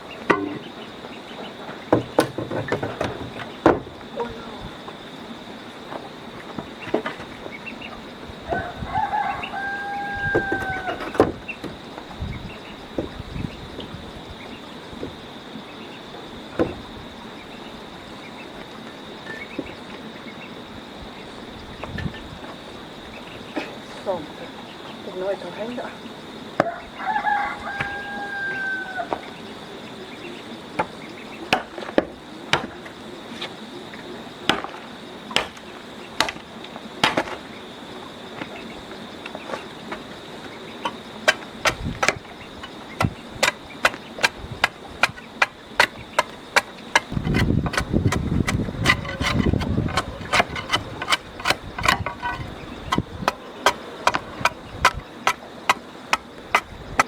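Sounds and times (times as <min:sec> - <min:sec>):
high insect drone: 0:00.0 - 0:57.0
tool striking hard surface: 0:00.3 - 0:00.7
rooster crowing: 0:08.5 - 0:11.2, 0:26.6 - 0:29.4.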